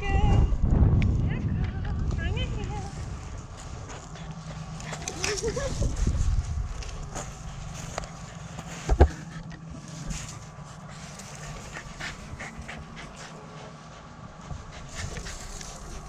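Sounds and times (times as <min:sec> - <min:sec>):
dog panting: 0:03.5 - 0:06.2, 0:07.1 - 0:16.0.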